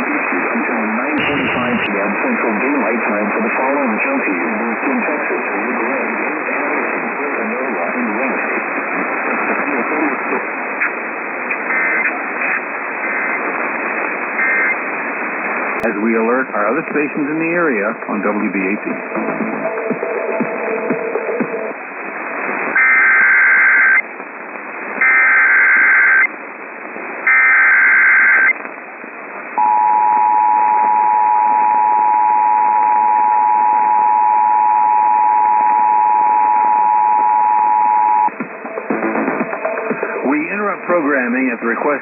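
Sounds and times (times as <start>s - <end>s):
radio hiss: 0.0s - 32.4s, 33.0s - 42.0s
two-tone attention signal: 29.6s - 38.4s.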